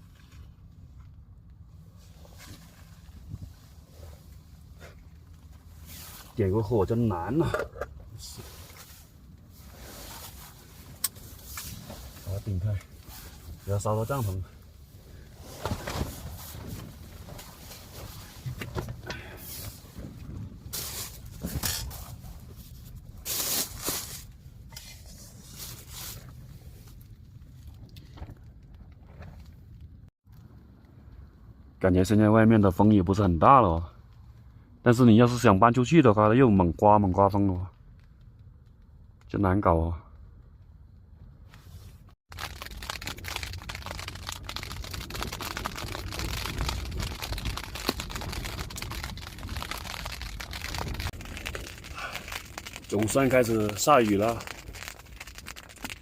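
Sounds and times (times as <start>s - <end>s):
low steady rumble: 0.0s - 56.0s
tent fabric rustling: 8.4s - 14.4s, 15.3s - 18.6s
rain pattering on tent fabric: 42.3s - 56.0s.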